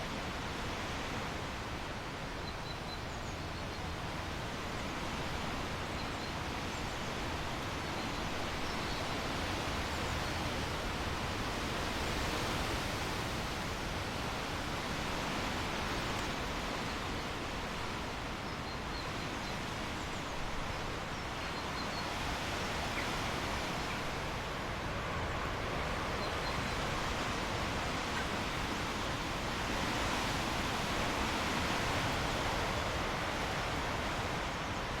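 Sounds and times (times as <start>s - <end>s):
river water rushing: 3.5s - 35.0s.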